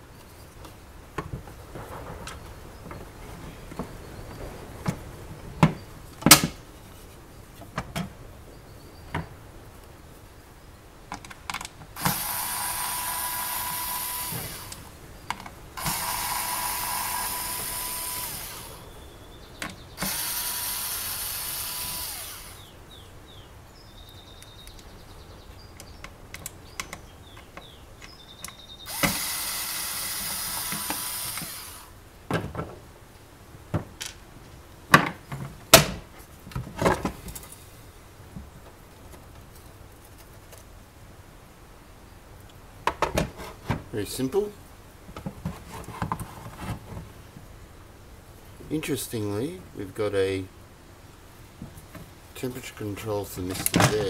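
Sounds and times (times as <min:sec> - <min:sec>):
cordless drill whirring: 0:12.0 - 0:14.9, 0:15.8 - 0:18.9, 0:20.0 - 0:22.7, 0:28.9 - 0:31.9.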